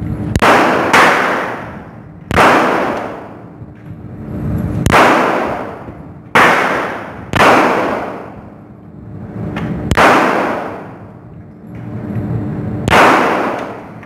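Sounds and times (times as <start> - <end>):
gunshots with echo: 0.3 - 3.5, 4.8 - 8.5, 9.9 - 11.1, 12.8 - 14.0.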